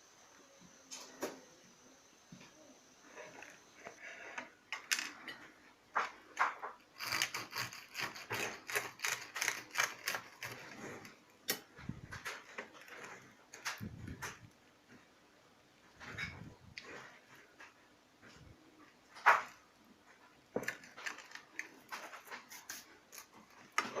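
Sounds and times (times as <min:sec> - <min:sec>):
knife cutting crunchy burger: 0:07.0 - 0:11.1.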